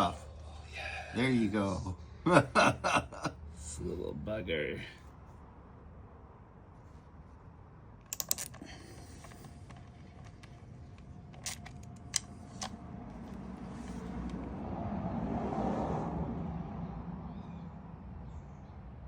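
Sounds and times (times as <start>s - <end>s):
metal tool clicks and clinks: 8.1s - 8.6s, 11.3s - 12.3s.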